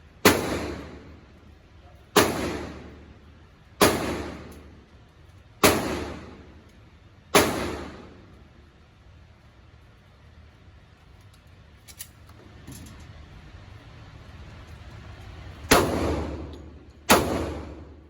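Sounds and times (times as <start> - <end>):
gunshots with reverberation: 0.2 - 1.3, 2.2 - 3.2, 3.8 - 4.8, 5.6 - 6.6, 7.3 - 8.3, 15.7 - 18.0.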